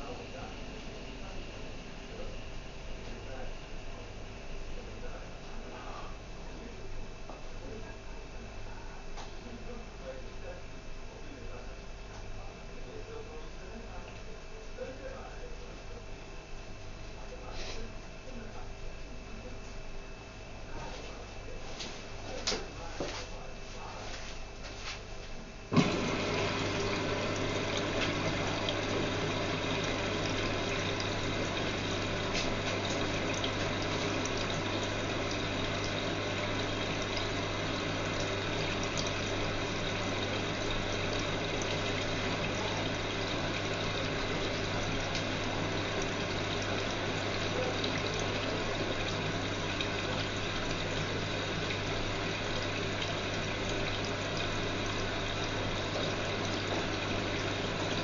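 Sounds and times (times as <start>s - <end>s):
electrical hum: 0.0s - 58.0s
water rushing in washing machine: 25.7s - 58.0s.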